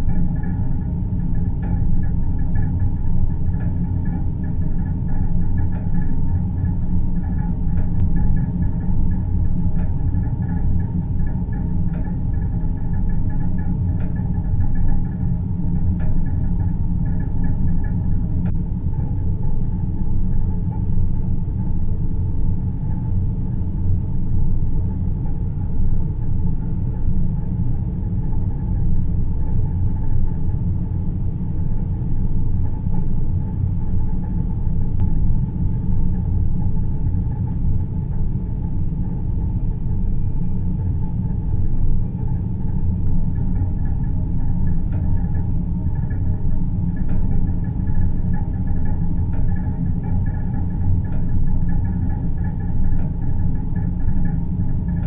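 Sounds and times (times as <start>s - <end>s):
faint hum: 0.0s - 55.0s
low rumbling drone: 0.0s - 55.0s.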